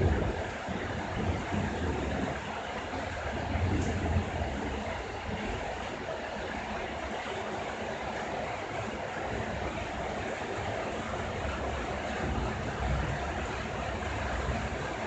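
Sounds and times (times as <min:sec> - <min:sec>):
low rumble of thunder: 0:00.0 - 0:05.9, 0:11.4 - 0:15.0
heavy rain: 0:00.0 - 0:15.0.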